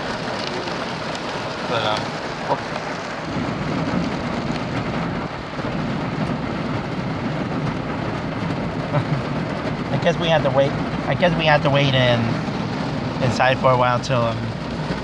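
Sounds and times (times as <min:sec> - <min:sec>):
heavy rain pouring: 0:00.0 - 0:15.0.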